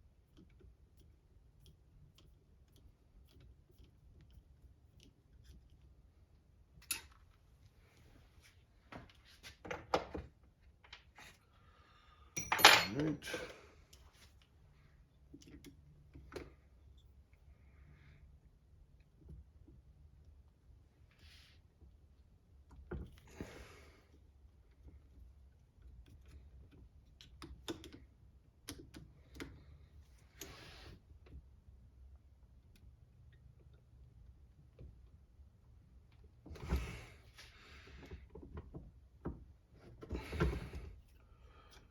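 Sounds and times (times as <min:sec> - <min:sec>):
tools clicking and knocking: 0:12.4 - 0:13.0.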